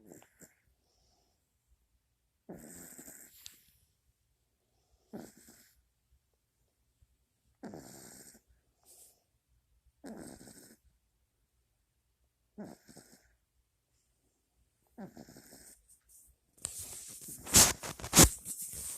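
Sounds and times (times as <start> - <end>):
puppy snoring: 0.0 - 1.2, 2.4 - 3.6, 5.0 - 5.9, 7.6 - 9.2, 10.0 - 10.9, 12.5 - 13.4, 14.8 - 16.0
rustling: 15.9 - 18.9.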